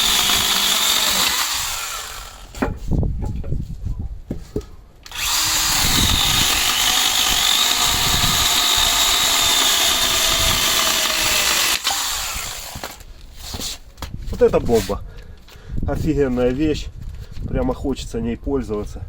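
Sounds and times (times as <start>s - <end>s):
electric motor whining: 0.0s - 2.5s, 5.1s - 13.0s.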